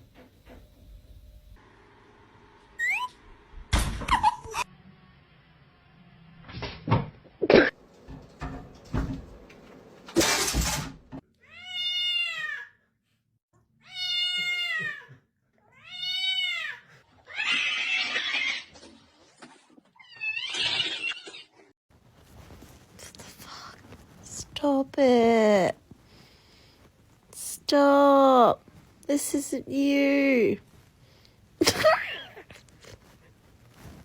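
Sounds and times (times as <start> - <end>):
cat meowing: 11.4 - 12.7, 13.8 - 18.6.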